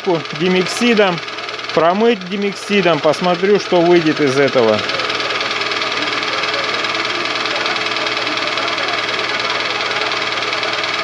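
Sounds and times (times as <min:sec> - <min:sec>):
car engine knocking: 0:00.0 - 0:11.0.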